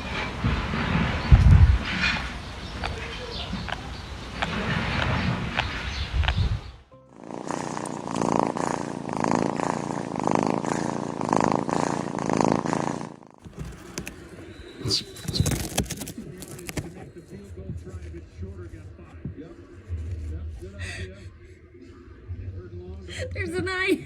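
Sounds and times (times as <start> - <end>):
cat purring: 7.1 - 21.2
scattered clicks and knocks: 14.9 - 17.0.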